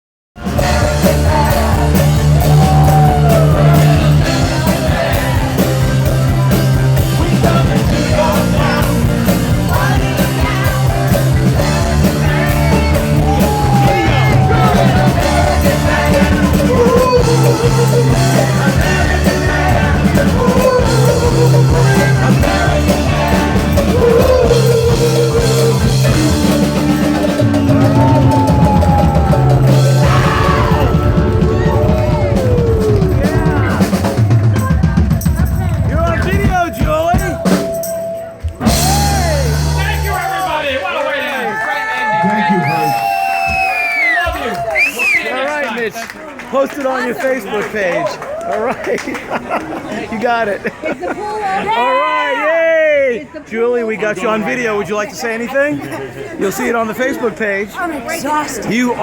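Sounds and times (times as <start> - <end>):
person singing: 0.4 - 35.0
live rock band playing: 0.4 - 40.8.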